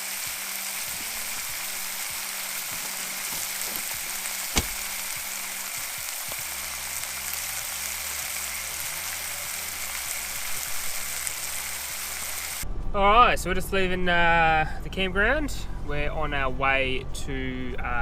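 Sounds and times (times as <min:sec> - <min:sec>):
food sizzling in a pan: 0:00.0 - 0:12.6.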